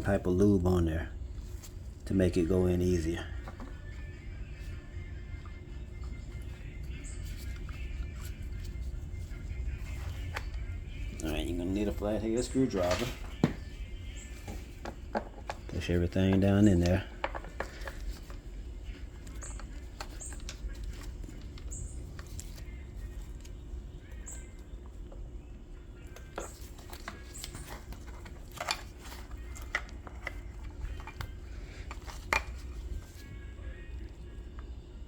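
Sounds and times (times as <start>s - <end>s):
low steady hum: 0.0s - 35.0s.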